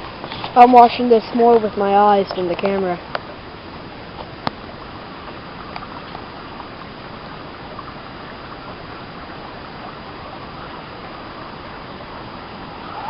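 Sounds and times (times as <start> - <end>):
small ticks and splashes: 0.0 - 3.4, 4.1 - 10.1
creek water running: 0.0 - 13.0.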